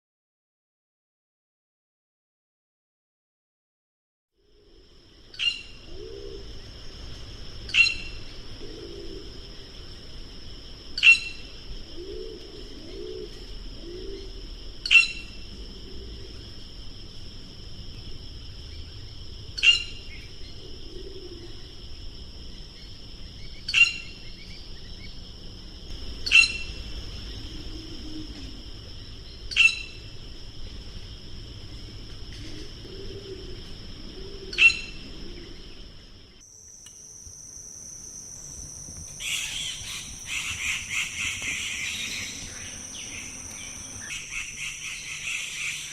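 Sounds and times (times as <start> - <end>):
high-pitched drone: 37.6 - 45.9
bird giving sharp calls: 39.2 - 45.9.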